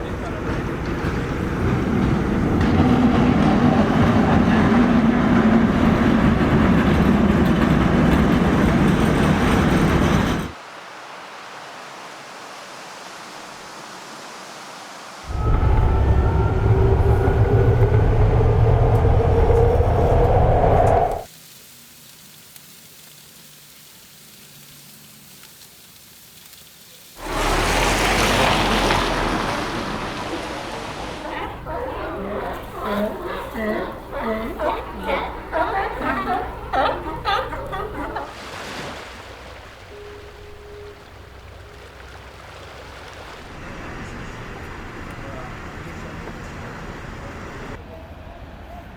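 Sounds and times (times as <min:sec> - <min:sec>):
train rumbling on rails: 0:00.0 - 0:10.6, 0:15.3 - 0:21.3, 0:27.2 - 0:38.3, 0:39.3 - 0:48.9
loud steady rushing noise: 0:15.2 - 0:21.3.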